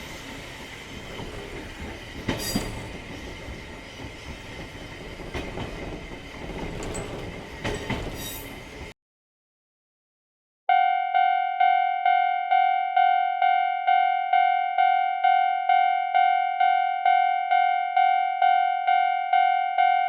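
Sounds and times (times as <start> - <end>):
train rumbling on rails: 0.0 - 9.0
sharp rail clacks: 1.0 - 8.9.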